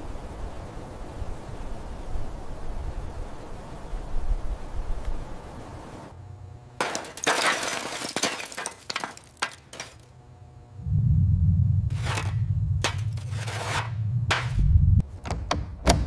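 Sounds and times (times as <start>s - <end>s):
low steady hum: 0.0s - 7.2s, 8.8s - 15.8s
crunching and clinking impacts: 6.8s - 10.1s.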